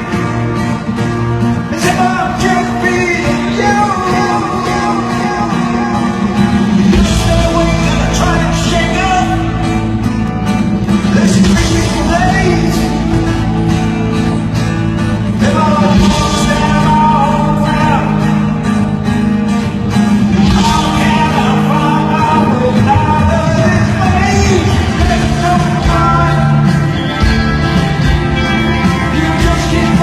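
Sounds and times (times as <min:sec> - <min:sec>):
live rock band playing: 0:00.0 - 0:30.0
person singing: 0:01.6 - 0:10.0, 0:11.0 - 0:13.6, 0:15.2 - 0:19.0, 0:20.3 - 0:27.8, 0:28.4 - 0:30.0.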